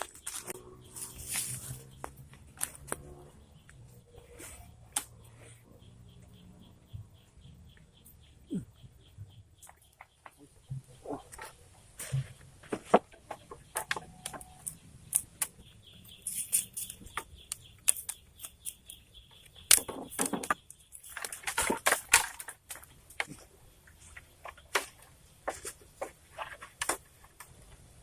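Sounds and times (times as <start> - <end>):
bamboo knocking and clattering: 9.2 - 28.0.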